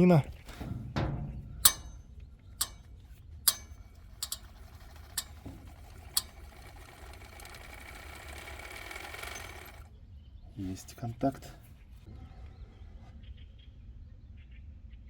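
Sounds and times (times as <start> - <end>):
weight ticking against metal pipe: 0.9 - 2.9, 3.5 - 9.8.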